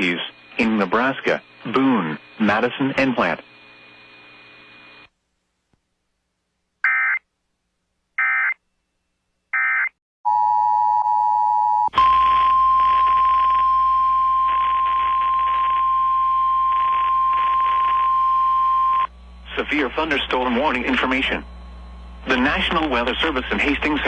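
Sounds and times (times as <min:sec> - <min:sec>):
noisy background: 0:19.0 - 0:24.0.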